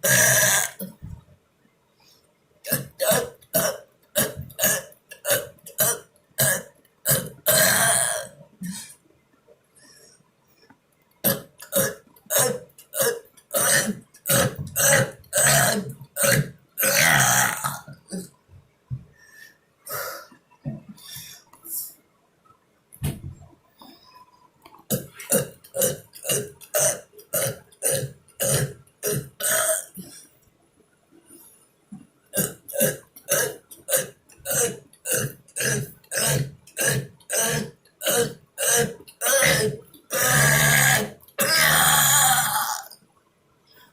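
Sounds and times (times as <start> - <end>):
man burping: 0.0 - 1.2, 2.7 - 9.0, 11.2 - 18.4, 24.9 - 30.2, 32.3 - 43.0.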